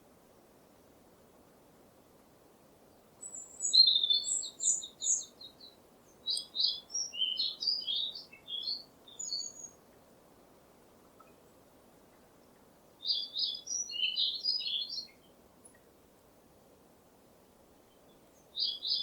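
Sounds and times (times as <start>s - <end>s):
songbird trilling and chirping: 3.2s - 9.9s, 13.0s - 15.8s, 17.9s - 19.0s.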